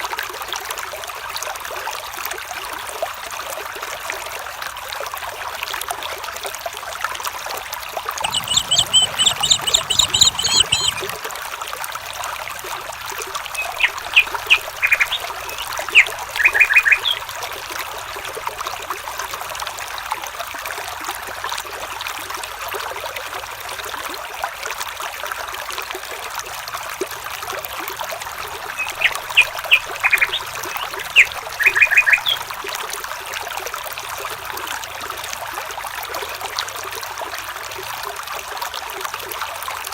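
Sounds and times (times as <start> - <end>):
stream trickling: 0.0 - 39.9
bird calls: 8.2 - 11.1, 13.4 - 17.3, 28.4 - 32.6
fast chattering bird trill: 8.2 - 11.1, 13.5 - 17.2, 28.7 - 32.5
sharp bird chirps: 8.2 - 11.1, 13.5 - 17.2, 28.7 - 32.4.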